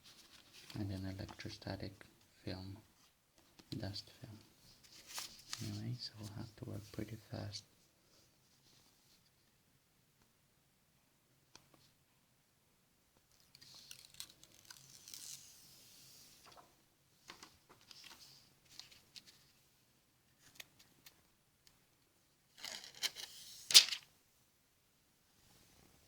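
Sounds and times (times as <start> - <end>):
film peeling: 13.5 - 15.5.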